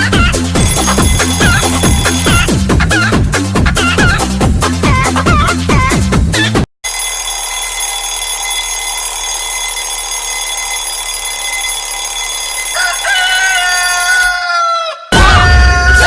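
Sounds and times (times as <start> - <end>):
rooster crowing: 12.5 - 15.1.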